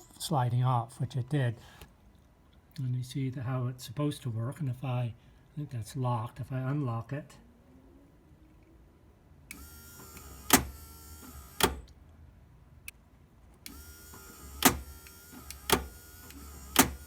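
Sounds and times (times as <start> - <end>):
door lock motor whirring: 9.5 - 11.9, 13.6 - 17.0
door lock clunks: 10.1 - 10.8, 11.5 - 11.9, 14.6 - 17.0.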